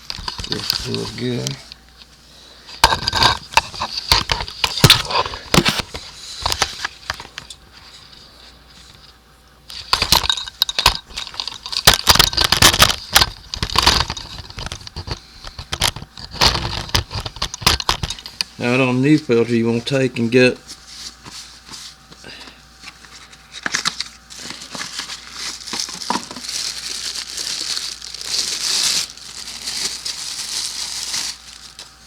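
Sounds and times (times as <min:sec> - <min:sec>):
tools clicking and rattling: 0:00.1 - 0:01.7, 0:09.8 - 0:18.5.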